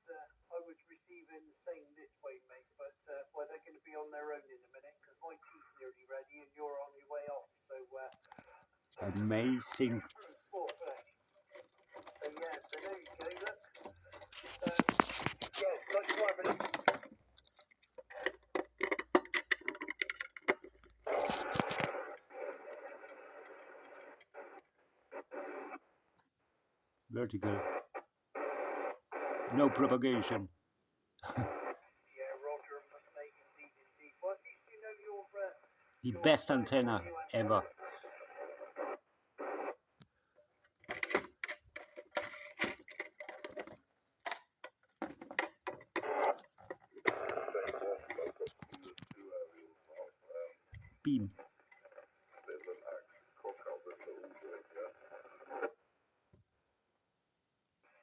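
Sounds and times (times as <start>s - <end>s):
radio static hiss: 21.0s - 24.6s, 27.3s - 30.5s, 31.3s - 39.8s, 47.1s - 55.8s.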